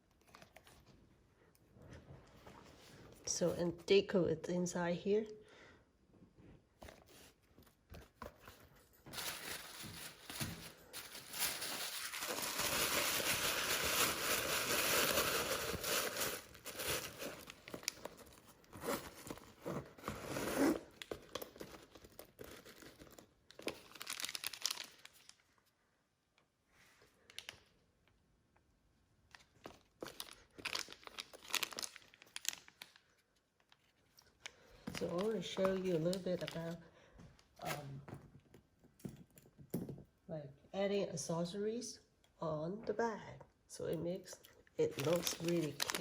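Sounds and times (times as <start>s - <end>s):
packaging crinkling: 8.0s - 25.5s, 29.3s - 36.8s, 44.9s - 46.0s.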